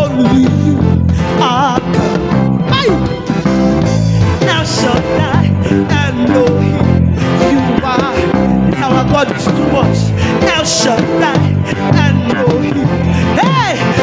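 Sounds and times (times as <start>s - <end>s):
electric bass line: 0.0s - 14.0s
gospel band playing: 0.0s - 14.0s
people singing: 4.1s - 14.0s.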